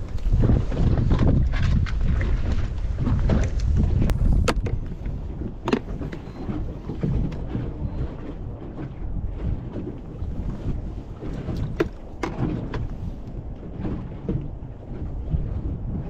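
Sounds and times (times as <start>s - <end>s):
wind buffeting microphone: 0.0s - 16.0s
sharp clicks or knocks: 4.4s - 4.8s.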